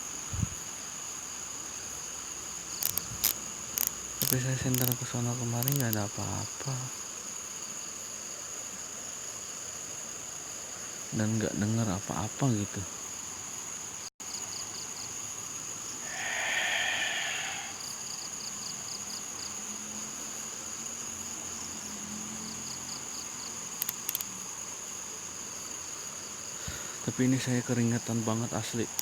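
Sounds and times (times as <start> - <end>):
cricket chirps: 0.0 - 29.0
insects trilling: 0.0 - 29.0
faint clicks: 2.8 - 6.1, 23.8 - 24.3
brief hissing: 16.0 - 17.8.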